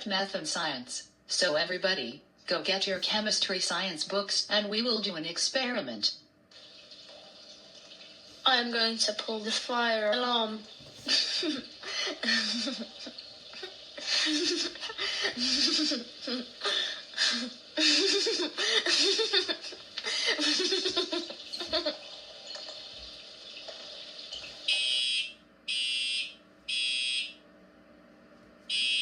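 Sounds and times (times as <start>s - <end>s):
fire alarm beeps: 24.7s - 27.4s, 28.7s - 29.0s.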